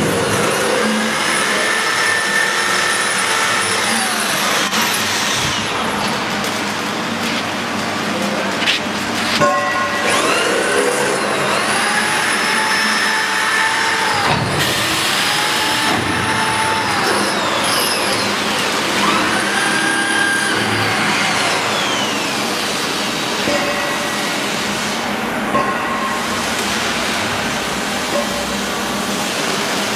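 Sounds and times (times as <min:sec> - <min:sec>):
motor whine: 0:00.0 - 0:06.4, 0:10.0 - 0:25.4
welding machine running: 0:00.0 - 0:29.9.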